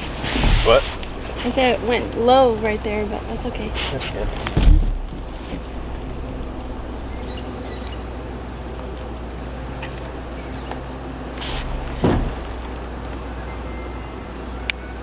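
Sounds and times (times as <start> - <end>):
low hum: 0.0 - 15.0
short hiss: 0.2 - 1.6, 11.4 - 12.0
high-pitched insect drone: 5.5 - 12.0.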